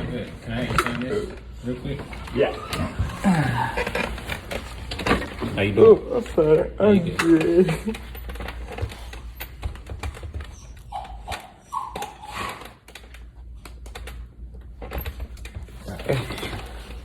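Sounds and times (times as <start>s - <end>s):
small dog whining: 2.4s - 4.2s, 10.5s - 12.8s.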